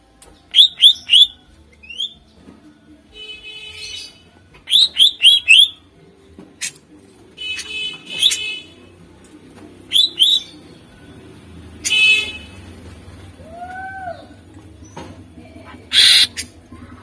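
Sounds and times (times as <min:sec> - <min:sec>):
bird chirping: 0:00.5 - 0:02.2, 0:03.9 - 0:05.8, 0:09.9 - 0:10.7, 0:15.9 - 0:16.5.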